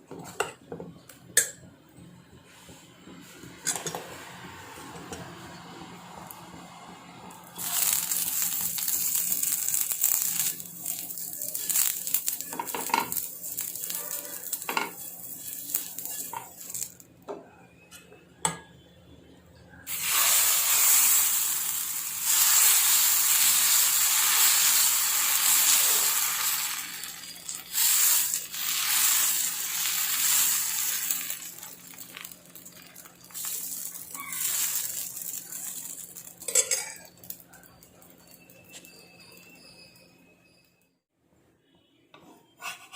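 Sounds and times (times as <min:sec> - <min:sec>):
batter sizzling on hot griddle: 0:04.3 - 0:17.0, 0:19.9 - 0:38.4.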